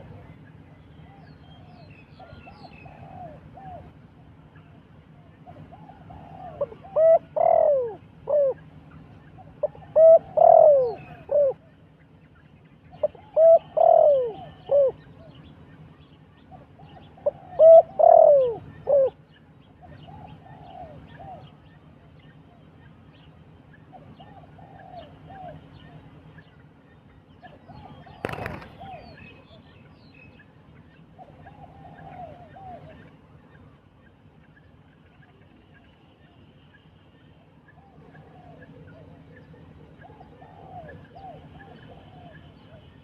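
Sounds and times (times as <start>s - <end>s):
dove cooing: 0.0s - 11.8s, 12.9s - 15.5s, 16.5s - 22.6s, 23.7s - 26.5s, 27.4s - 29.7s, 31.2s - 33.8s, 37.6s - 43.0s.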